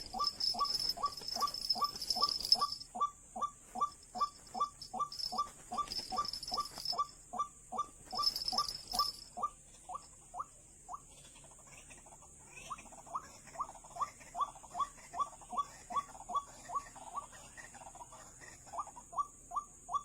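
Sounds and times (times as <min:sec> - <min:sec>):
bird calling: 0:00.0 - 0:10.0.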